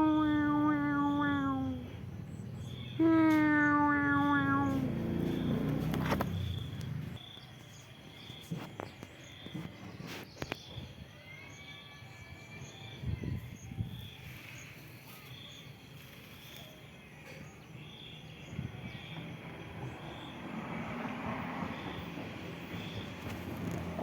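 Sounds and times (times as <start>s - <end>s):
outdoor background noise: 0.0s - 24.0s
insect chirping: 2.6s - 3.0s, 4.6s - 9.7s, 12.8s - 24.0s.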